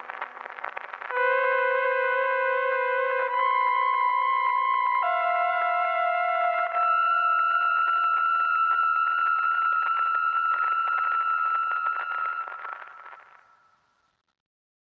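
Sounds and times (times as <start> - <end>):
film crackle and scratches: 0.0 - 1.2, 8.6 - 14.3
tape hiss: 0.0 - 14.3.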